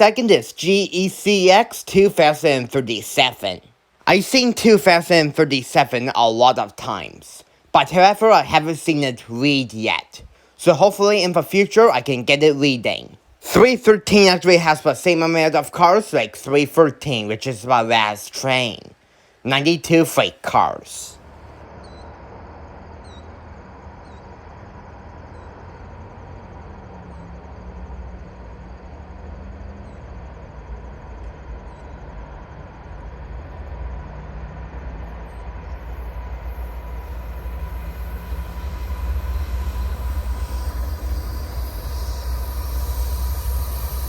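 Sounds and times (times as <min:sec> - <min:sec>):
freight train wheels rumbling: 0:22.3 - 0:44.0.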